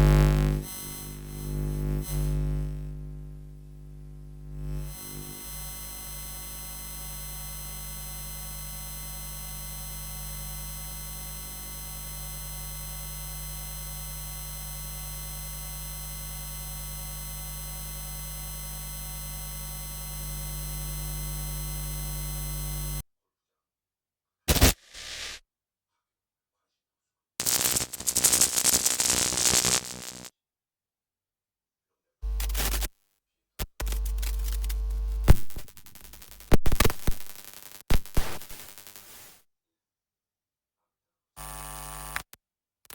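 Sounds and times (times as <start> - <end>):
electrical hum and buzz: 0.0 - 23.0, 27.4 - 30.3, 32.2 - 32.9, 33.6 - 38.2, 41.4 - 42.3
thin high electrical whine: 0.0 - 23.0, 27.4 - 30.3.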